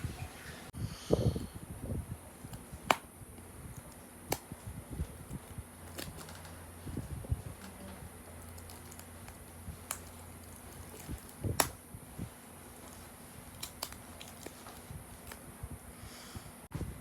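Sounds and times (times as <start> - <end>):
low steady hum: 0.0 - 17.0
hands handling packaging: 2.3 - 15.5.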